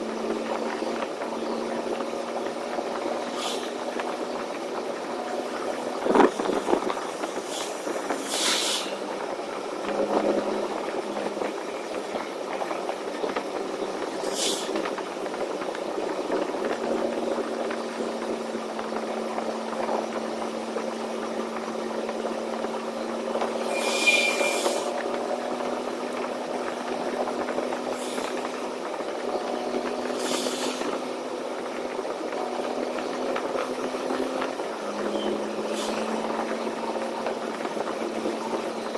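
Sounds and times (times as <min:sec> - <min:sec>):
truck engine droning: 0:00.0 - 0:38.9
short hisses: 0:07.6 - 0:09.0, 0:23.6 - 0:24.9.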